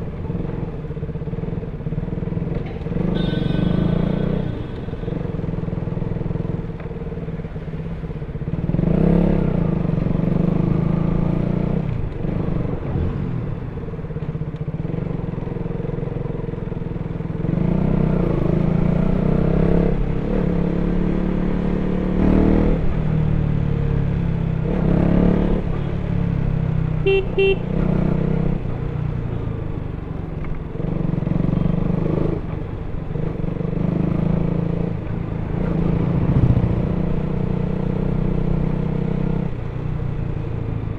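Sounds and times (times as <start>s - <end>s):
horn beeps: 3.0s - 5.2s, 27.0s - 27.8s
motorcycle engine revving: 14.6s - 40.8s.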